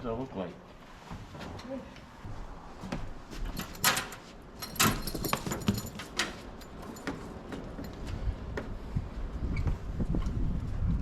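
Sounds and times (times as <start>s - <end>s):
small metal parts clinking: 3.5s - 7.1s.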